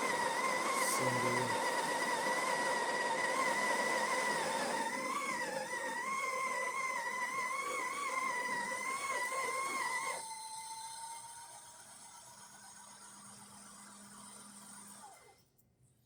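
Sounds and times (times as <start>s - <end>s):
burr grinder grinding coffee: 0.0s - 15.4s.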